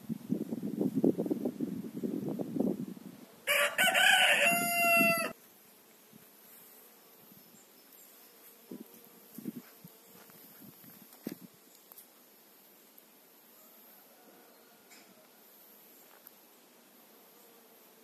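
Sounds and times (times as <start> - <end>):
rooster crowing: 3.4 - 5.4, 13.6 - 15.4.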